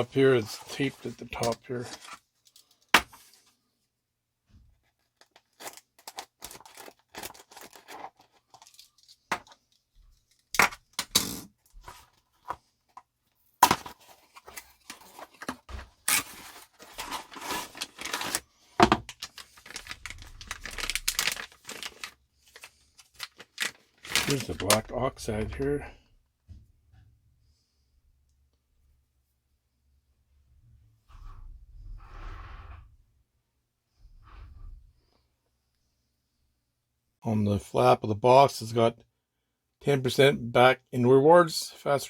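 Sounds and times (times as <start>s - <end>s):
cardboard crinkling: 4.8s - 9.7s, 13.6s - 25.7s.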